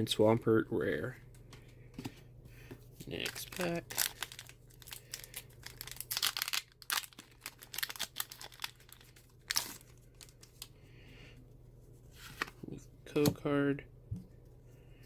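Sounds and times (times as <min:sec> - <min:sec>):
packaging tearing and crinkling: 0:03.1 - 0:10.7.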